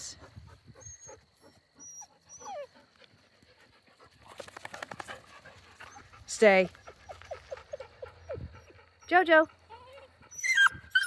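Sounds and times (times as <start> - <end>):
dog panting: 0.0 - 10.7
dog whining: 0.8 - 2.7, 9.7 - 11.0.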